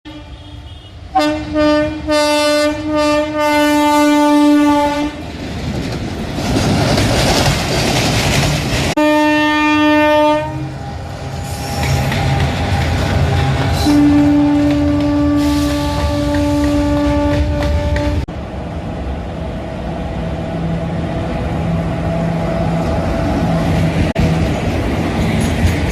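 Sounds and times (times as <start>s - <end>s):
locomotive horn blasts: 0.0s - 5.2s, 9.0s - 10.9s, 13.2s - 18.3s
train rumbling and clattering: 1.0s - 25.9s.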